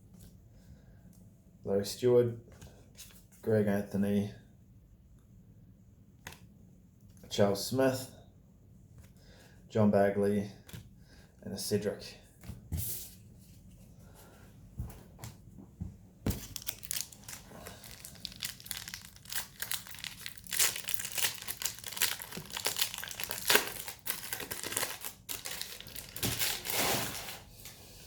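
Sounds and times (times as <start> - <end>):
wrapper tearing and crinkling: 16.3 - 27.4.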